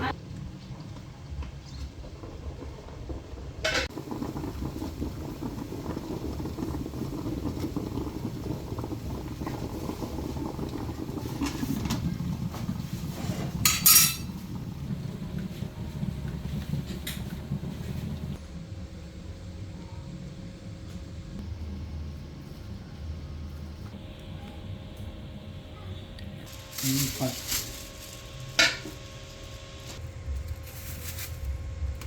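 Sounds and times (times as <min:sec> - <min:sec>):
low background rumble: 0:00.0 - 0:32.0
clatter of pots or dishes: 0:03.6 - 0:03.9, 0:11.2 - 0:14.4.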